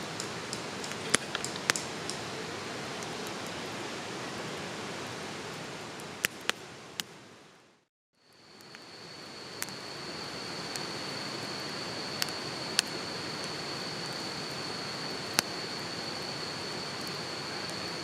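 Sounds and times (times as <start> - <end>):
steady rushing hiss: 0.0 - 7.6, 8.3 - 18.0
high-pitched insect trill: 8.2 - 18.0.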